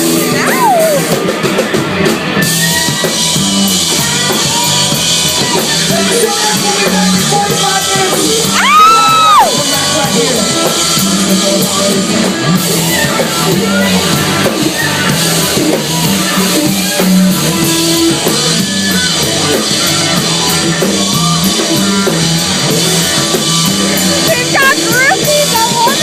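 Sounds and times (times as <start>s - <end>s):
live rock band playing: 0.0s - 26.0s
person shouting woo: 0.4s - 1.1s, 8.5s - 9.6s.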